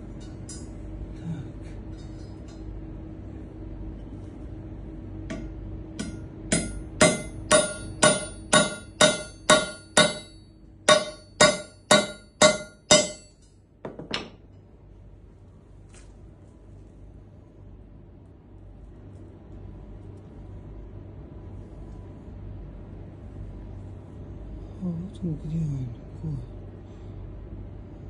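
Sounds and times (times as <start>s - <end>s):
knife striking metal nail: 5.3s - 13.4s.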